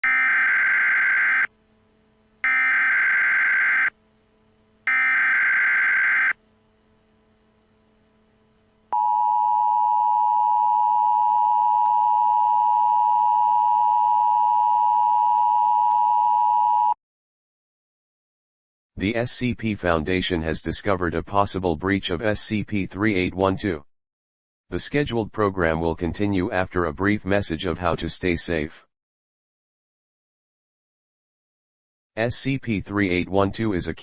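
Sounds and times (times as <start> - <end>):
two-tone attention signal: 9.0 - 17.0.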